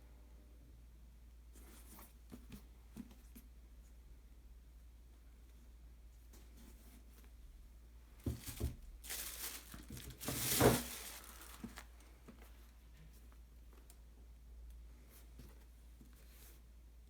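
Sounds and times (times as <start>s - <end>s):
packaging crinkling and rustling: 8.3s - 12.7s.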